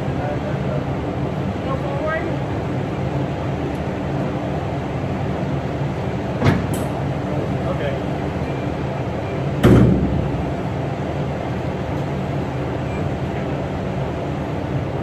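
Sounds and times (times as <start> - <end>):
engine running: 2.7 - 15.0
loud clunk: 6.4 - 7.0, 9.6 - 10.6.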